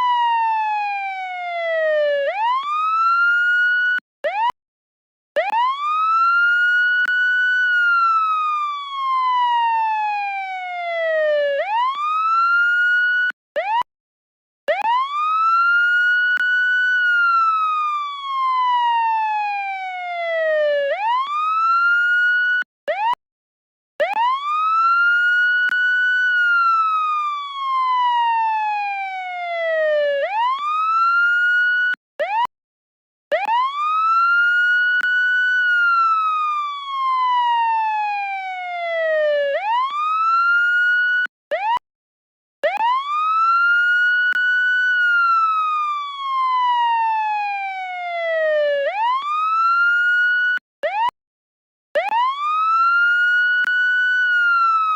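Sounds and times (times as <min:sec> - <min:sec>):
police siren wailing: 0:00.0 - 0:04.6, 0:05.4 - 0:13.8, 0:14.7 - 0:23.2, 0:24.0 - 0:32.5, 0:33.3 - 0:41.8, 0:42.6 - 0:51.1, 0:52.0 - 0:54.9.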